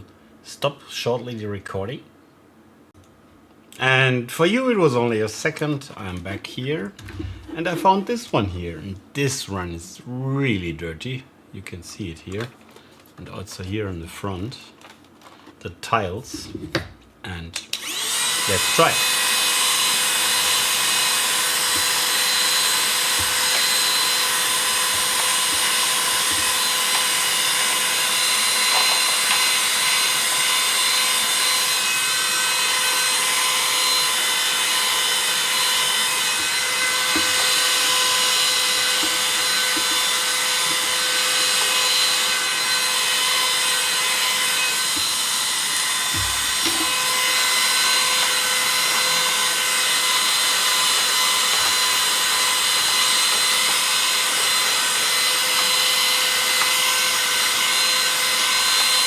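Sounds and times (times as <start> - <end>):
small vacuum cleaner whining: 7.0 - 8.0, 17.7 - 59.0.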